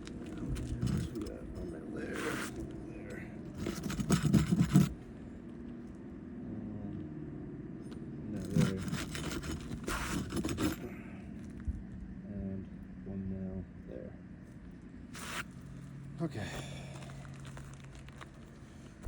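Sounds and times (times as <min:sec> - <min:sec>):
steady low hum: 0:00.0 - 0:19.0
metal tool scraping shingles: 0:03.6 - 0:05.0, 0:08.4 - 0:10.9.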